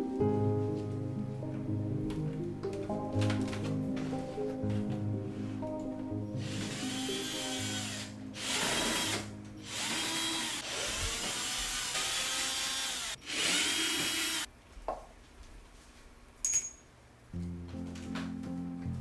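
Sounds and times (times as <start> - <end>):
power drill motor whine: 6.4 - 14.5.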